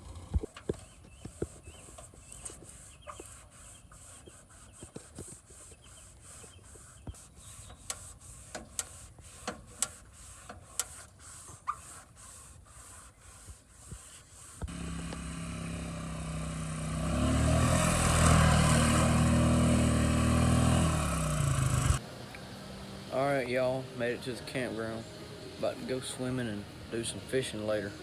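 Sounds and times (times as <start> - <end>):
vehicle engine running: 14.7 - 23.0.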